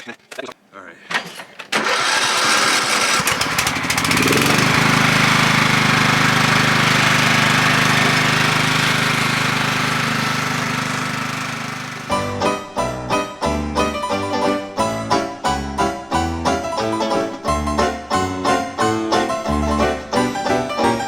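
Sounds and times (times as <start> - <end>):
small gasoline engine running: 1.7 - 12.4
music: 12.1 - 21.0.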